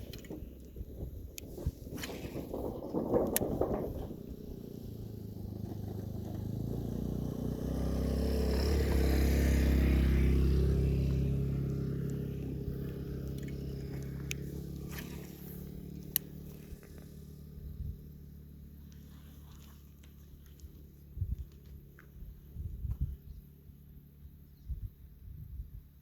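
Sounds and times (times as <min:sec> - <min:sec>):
vehicle driving past: 0:03.9 - 0:19.7.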